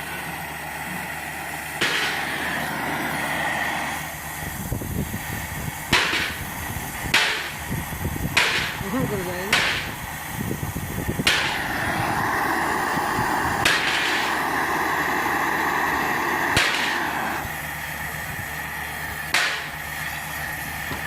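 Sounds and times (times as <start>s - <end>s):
hiss with high whine: 0.0s - 21.0s.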